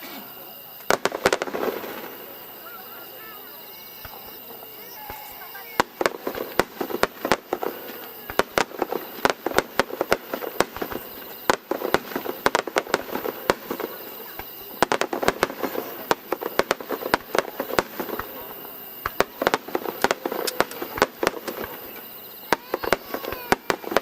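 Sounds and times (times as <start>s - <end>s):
fireworks bangs and cracks: 0.0s - 24.0s.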